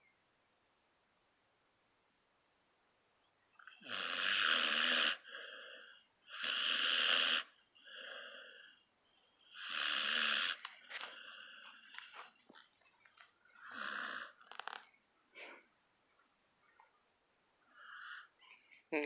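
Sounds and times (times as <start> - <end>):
puppy snoring: 3.6 - 8.9, 9.5 - 12.2, 13.5 - 14.8
small clicks: 11.8 - 13.4, 14.4 - 15.0.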